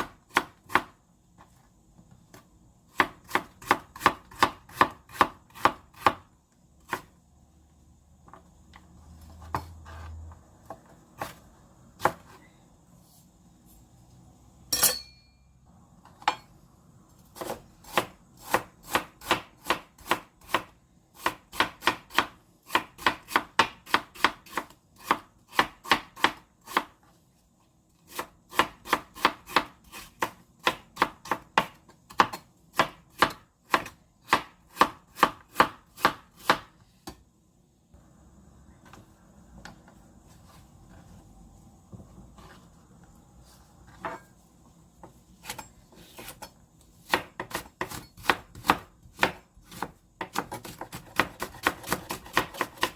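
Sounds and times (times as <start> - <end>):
knife chopping on cutting board: 0.0 - 1.0, 2.9 - 6.3, 17.4 - 26.9, 28.1 - 37.2, 45.4 - 52.9.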